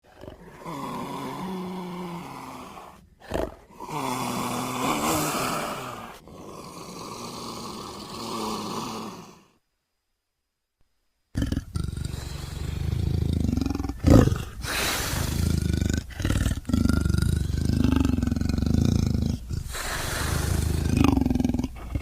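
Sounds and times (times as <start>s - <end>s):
big cat growling: 0.0s - 9.5s, 11.4s - 22.0s
sharp snarl: 11.4s - 22.0s.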